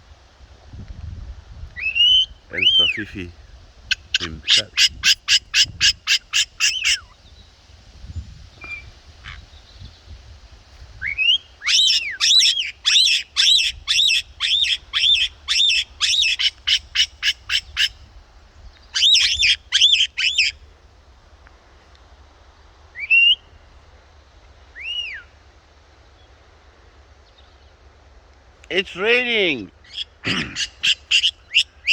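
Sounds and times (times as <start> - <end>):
low wind rumble: 0.0 - 31.9
bird squawking: 1.8 - 3.1, 3.9 - 7.2, 11.0 - 18.0, 19.0 - 20.6, 29.8 - 31.9.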